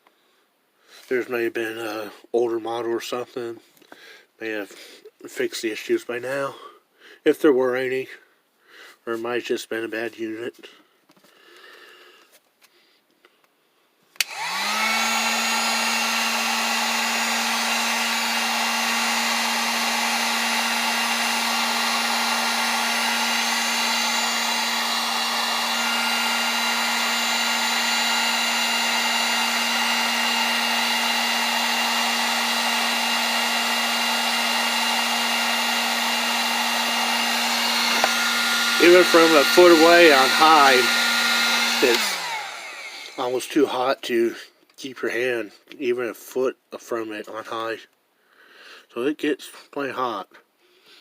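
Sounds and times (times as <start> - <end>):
heat gun fan humming: 14.2 - 43.8
heat gun switch click: 37.9 - 38.2.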